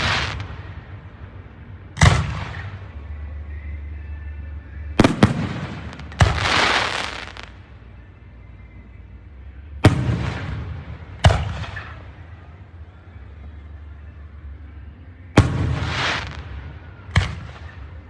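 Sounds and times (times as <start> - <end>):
fireworks shells bursting: 0.0 - 0.5.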